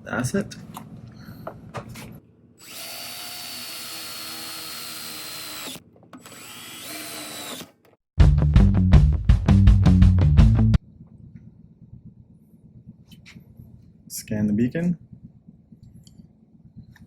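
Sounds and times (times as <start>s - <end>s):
power drill driving screws: 2.6s - 7.9s
loud music: 8.2s - 10.8s.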